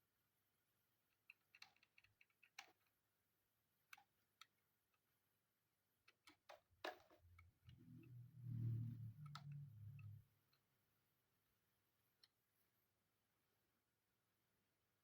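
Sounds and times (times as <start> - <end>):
small parts clicking and tapping: 1.0 - 3.2, 3.8 - 5.2, 6.0 - 8.2
low hum: 7.6 - 10.3.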